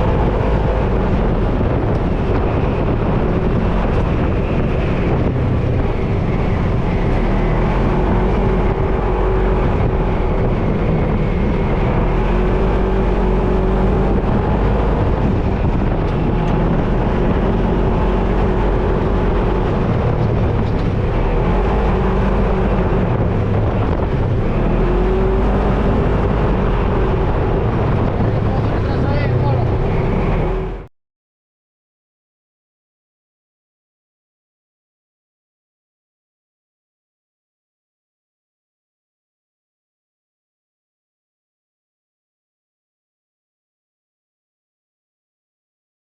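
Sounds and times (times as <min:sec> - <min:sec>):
off-road vehicle engine running: 0:00.0 - 0:30.9
wind noise: 0:00.0 - 0:30.9.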